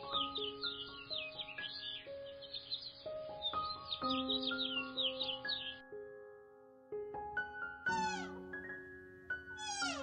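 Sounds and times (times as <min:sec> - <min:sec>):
background music of held notes: 0:00.0 - 0:10.0
high bird chirps: 0:07.9 - 0:08.4, 0:09.6 - 0:10.0.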